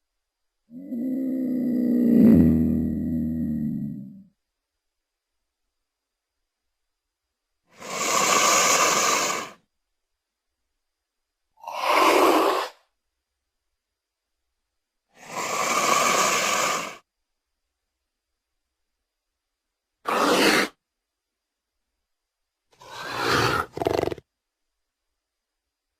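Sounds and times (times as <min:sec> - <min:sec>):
breathy dinosaur exhales: 0:07.7 - 0:09.6, 0:15.2 - 0:17.0, 0:22.8 - 0:24.2.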